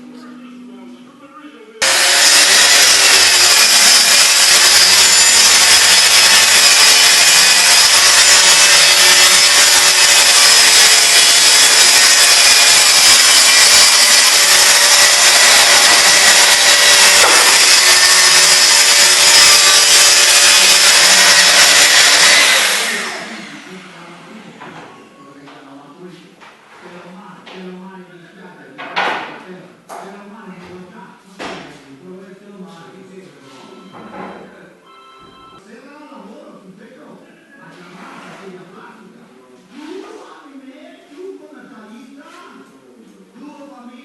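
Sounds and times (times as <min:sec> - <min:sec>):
power tool cutting wood: 0:01.8 - 0:24.2.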